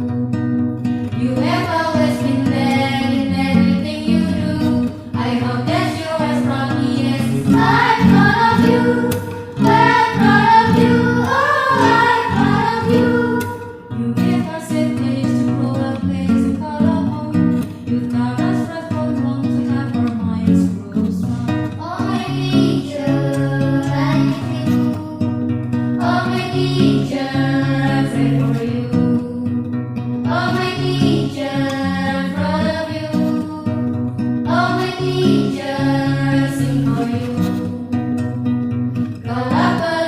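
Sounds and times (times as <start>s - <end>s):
acoustic guitar: 0.0s - 40.0s
young voices singing: 1.1s - 17.1s, 21.1s - 25.4s, 26.0s - 29.6s, 30.2s - 33.8s, 34.4s - 38.0s, 39.2s - 40.0s.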